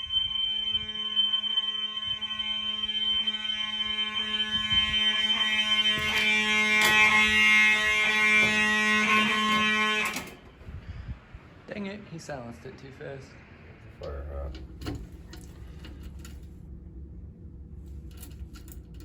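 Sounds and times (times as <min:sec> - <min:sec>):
fire alarm horns buzzing: 0:00.0 - 0:10.7.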